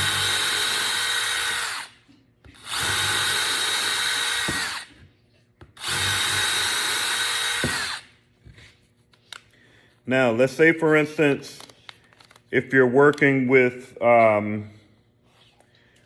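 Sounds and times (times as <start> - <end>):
cordless drill motor running: 0.0 - 2.0, 2.6 - 5.0, 5.8 - 8.1.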